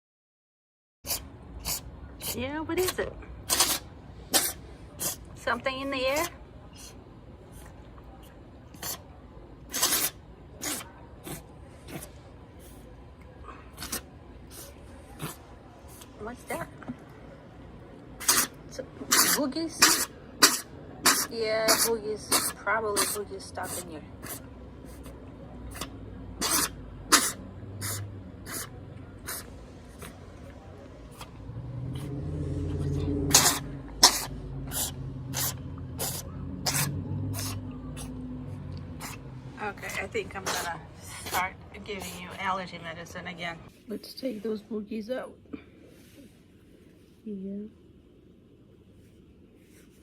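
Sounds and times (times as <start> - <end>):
cat sneezing: 1.0 - 5.5, 6.1 - 7.7, 8.7 - 16.8, 18.2 - 42.3.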